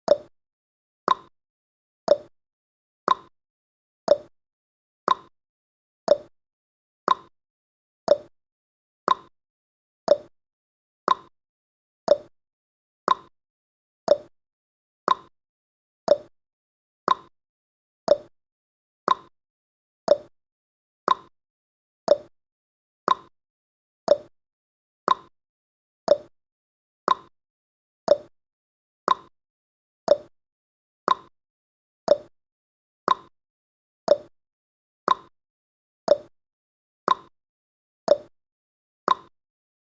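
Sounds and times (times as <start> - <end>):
clock-like timer ticks: 0.1 - 0.3, 1.1 - 1.3, 2.1 - 2.3, 3.1 - 3.3, 4.1 - 4.3, 5.1 - 5.3, 6.1 - 6.3, 7.1 - 7.3, 8.1 - 8.3, 9.1 - 9.3, 10.1 - 10.3, 11.1 - 11.3, 12.1 - 12.3, 13.1 - 13.3, 14.1 - 14.3, 15.1 - 15.3, 16.1 - 16.3, 17.1 - 17.3, 18.1 - 18.3, 19.1 - 19.3, 20.1 - 20.3, 21.1 - 21.3, 22.1 - 22.3, 23.1 - 23.3, 24.1 - 24.3, 25.1 - 25.3, 26.1 - 26.3, 27.1 - 27.3, 28.1 - 28.3, 29.1 - 29.3, 30.1 - 30.3, 31.1 - 31.3, 32.1 - 32.3, 33.1 - 33.3, 34.1 - 34.3, 35.1 - 35.3, 36.1 - 36.3, 37.1 - 37.3, 38.1 - 38.3, 39.1 - 39.3.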